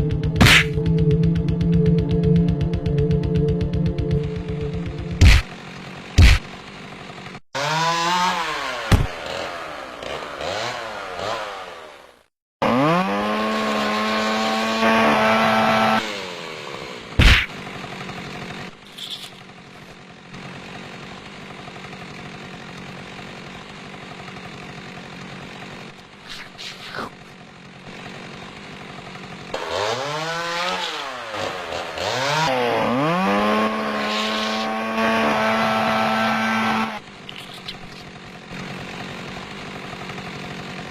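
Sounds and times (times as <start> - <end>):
sharp bang: 0.4 - 0.8
chainsaw engine revving: 4.2 - 40.9.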